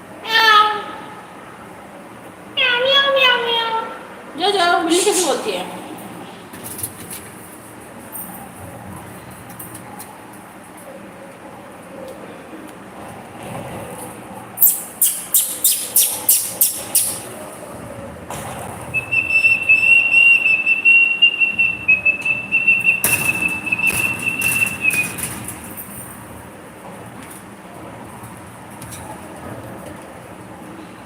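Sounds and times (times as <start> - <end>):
high whistled note: 19.0 - 25.2.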